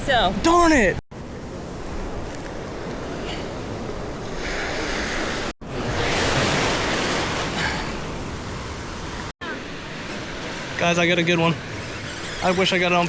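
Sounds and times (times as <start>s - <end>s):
surf washing onto beach: 3.8s - 11.7s.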